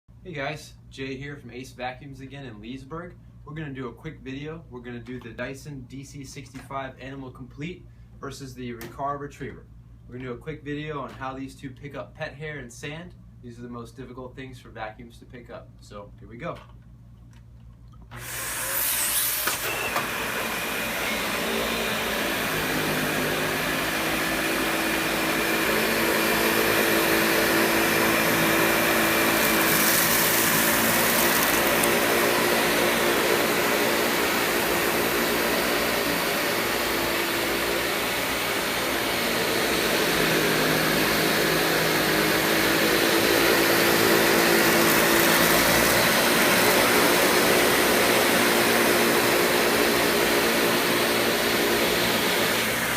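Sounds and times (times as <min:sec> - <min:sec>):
upright vacuum running: 0:18.1 - 0:52.9.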